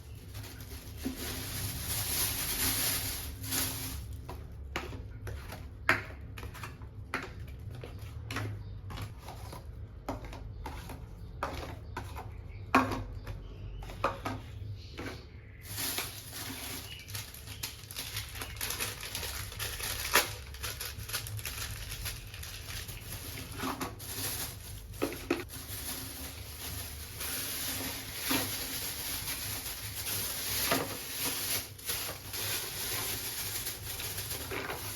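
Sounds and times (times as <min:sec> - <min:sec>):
rustling: 0:00.0 - 0:04.2, 0:15.6 - 0:34.9
groceries clicking and knocking: 0:00.0 - 0:34.9.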